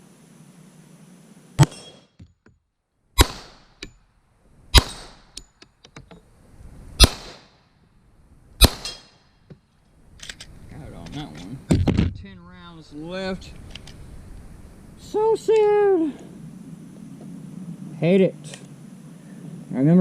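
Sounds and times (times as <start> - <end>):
handgun shots with echo: 3.2 - 3.7, 4.8 - 5.3, 7.0 - 7.5, 8.6 - 9.1.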